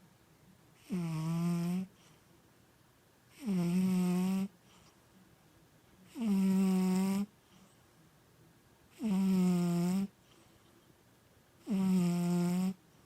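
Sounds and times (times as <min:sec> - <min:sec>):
cat snoring loudly: 0:00.8 - 0:01.9, 0:03.3 - 0:04.5, 0:06.1 - 0:07.3, 0:09.0 - 0:10.1, 0:11.6 - 0:12.8.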